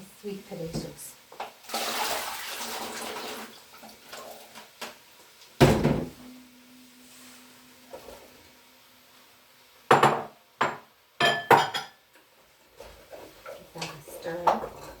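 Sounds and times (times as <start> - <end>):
faint steady hum: 5.1 - 12.7.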